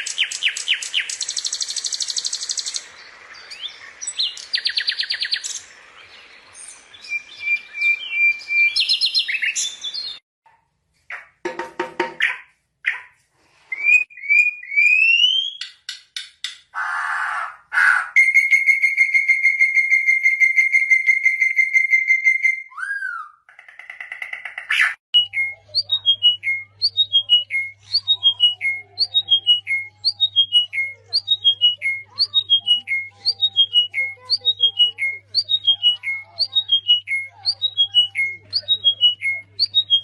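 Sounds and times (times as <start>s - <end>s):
bird trilling: 0.0s - 5.8s, 16.8s - 40.0s.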